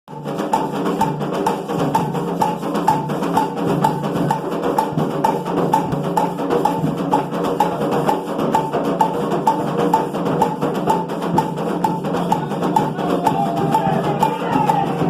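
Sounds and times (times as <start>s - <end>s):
woodblock-like tick: 11.4s - 14.8s.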